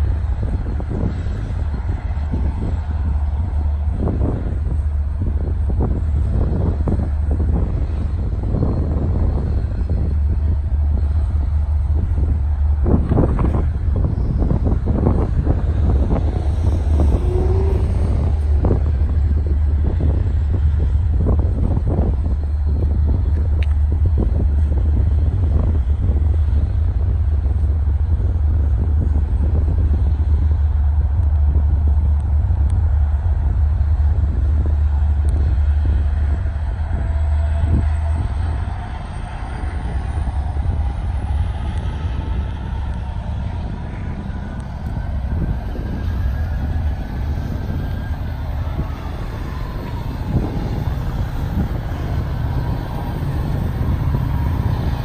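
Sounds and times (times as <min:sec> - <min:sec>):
diesel locomotive engine rumble: 0:00.0 - 0:55.0
rising whines: 0:00.8 - 0:25.2, 0:28.9 - 0:55.0.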